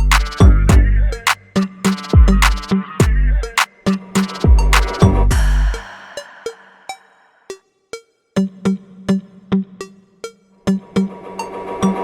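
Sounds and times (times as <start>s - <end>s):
low bass note: 0.0s - 1.2s
electronic music with drum-machine beats: 0.0s - 7.1s.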